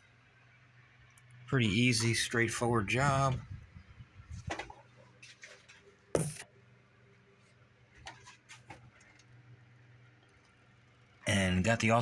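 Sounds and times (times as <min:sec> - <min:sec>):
faint steady hum: 0:00.0 - 0:12.0
sharp knock: 0:06.2 - 0:06.4.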